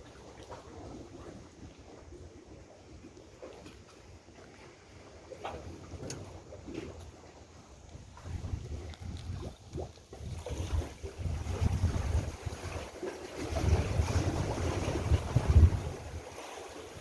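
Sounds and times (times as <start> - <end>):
faint sea: 0.0 - 17.0
wind buffeting microphone: 5.4 - 17.0.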